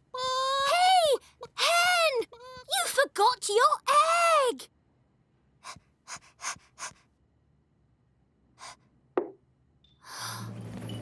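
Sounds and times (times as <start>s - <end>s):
cartoon character breathy puffs: 5.6s - 7.1s.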